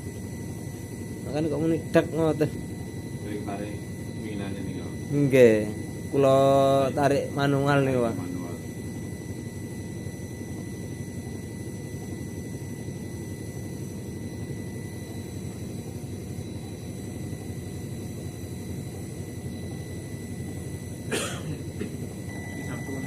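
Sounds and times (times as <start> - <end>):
washing machine rumbling: 15.1 - 23.0.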